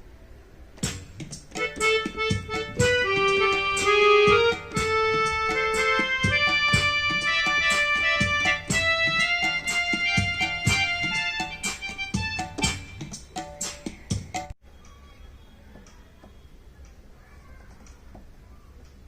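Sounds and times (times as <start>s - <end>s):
keyboard music with drum beat: 0.8s - 14.6s.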